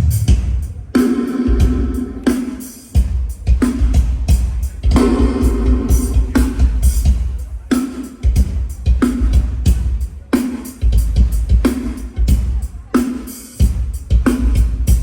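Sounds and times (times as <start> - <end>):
drum kit hits: 0.0 - 7.6
live band playing: 0.0 - 15.0.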